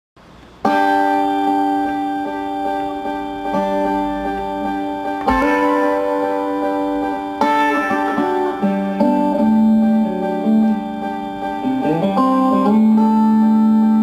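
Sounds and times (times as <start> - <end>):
acoustic guitar playing: 0.6 - 14.0.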